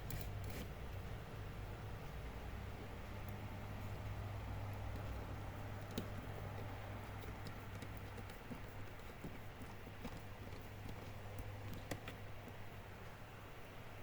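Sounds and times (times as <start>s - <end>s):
light clicks and taps: 2.7s - 13.2s.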